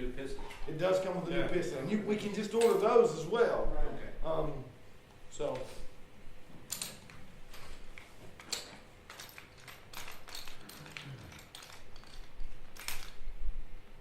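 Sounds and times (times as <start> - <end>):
metal parts clicking and rattling: 6.7 - 13.3.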